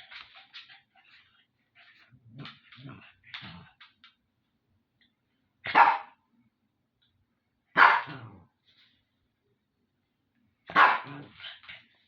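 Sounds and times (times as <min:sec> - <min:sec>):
dog barking: 0:05.7 - 0:06.2, 0:07.7 - 0:08.2, 0:10.7 - 0:11.2.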